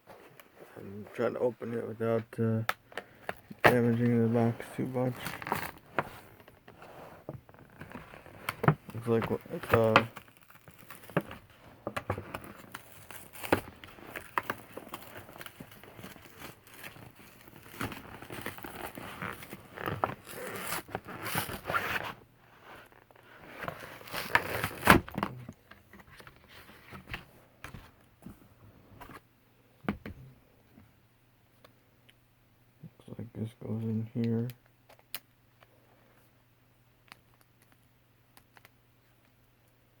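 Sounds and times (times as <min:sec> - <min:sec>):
cardboard box tearing and scraping: 0:12.3 - 0:22.2.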